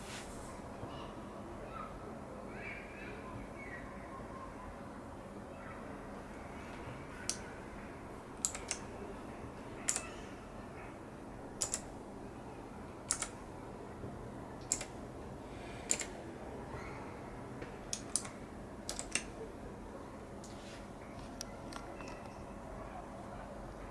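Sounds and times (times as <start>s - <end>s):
keyboard keys clicking: 8.4s - 8.9s, 9.9s - 10.1s, 11.6s - 12.0s, 13.0s - 13.4s, 14.6s - 15.0s, 15.8s - 16.2s, 17.9s - 19.4s.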